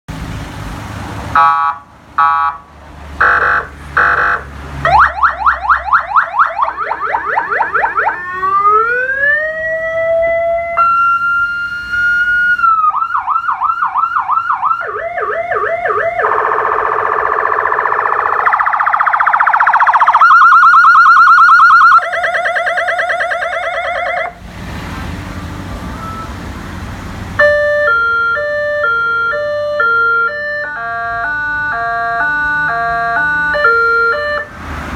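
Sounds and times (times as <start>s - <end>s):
electronic siren: 3.2s - 24.4s, 27.4s - 34.5s.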